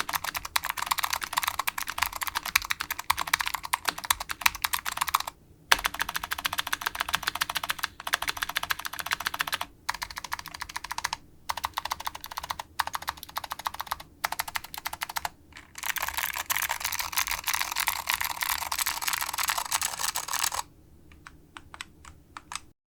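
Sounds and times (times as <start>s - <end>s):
fast typing on clicky keyboard: 0.0s - 22.7s.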